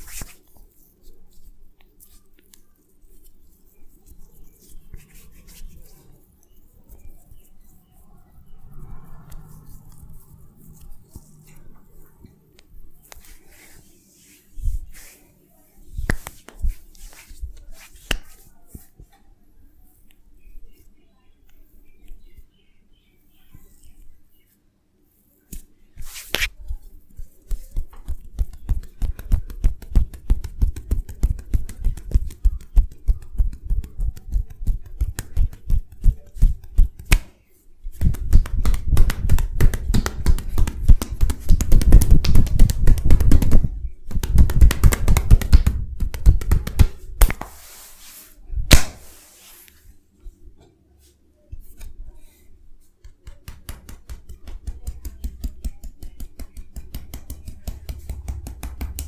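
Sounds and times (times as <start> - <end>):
massage tapping strikes: 37.9 - 47.6, 48.7 - 49.1, 53.0 - 59.0.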